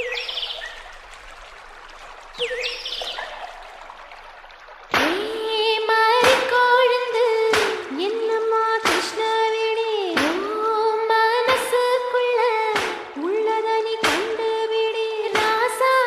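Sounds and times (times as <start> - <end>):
bird chirping: 0.0 - 0.9, 2.4 - 3.5
stream-like water sound: 0.0 - 16.0.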